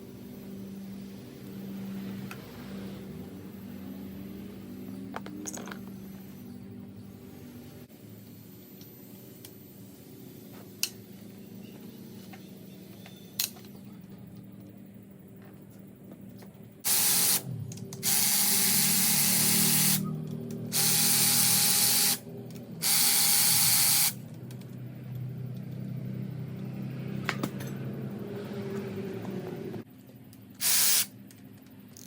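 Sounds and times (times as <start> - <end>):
hand-held power tool bursts: 16.9 - 17.4, 18.0 - 20.0, 20.7 - 22.2, 22.8 - 24.2, 30.6 - 31.1.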